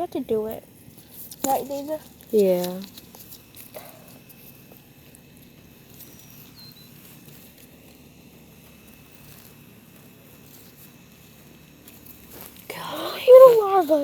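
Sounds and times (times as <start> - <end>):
faint high-pitched whine: 0.0 - 14.0.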